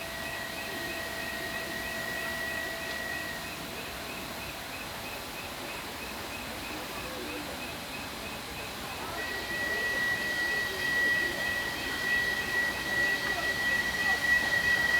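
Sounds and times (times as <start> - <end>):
thin held whistle tone: 9.2 - 14.9.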